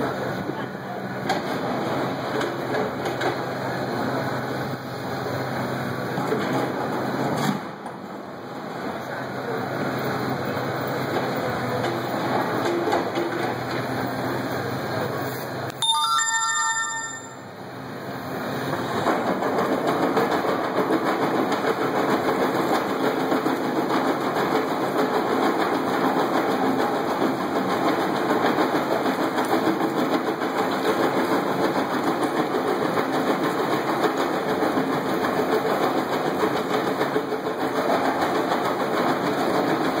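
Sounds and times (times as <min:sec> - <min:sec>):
short tonal sound: 0:15.8 - 0:17.6
excavator rock crusher clatter: 0:18.7 - 0:40.0.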